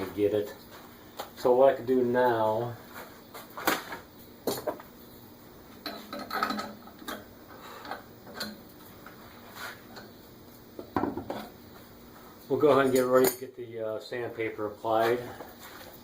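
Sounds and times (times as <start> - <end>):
light knocks and clinks of tools: 5.8 - 9.2.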